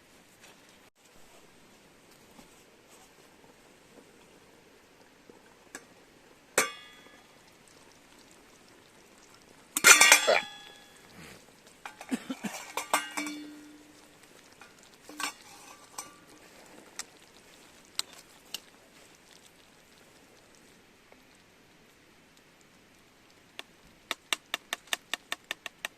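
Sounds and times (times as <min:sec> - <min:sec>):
metal cookware clinking and clattering: 0:06.6 - 0:07.2, 0:09.8 - 0:11.0, 0:11.8 - 0:13.8, 0:14.6 - 0:16.4
scattered ticks: 0:23.6 - 0:25.9.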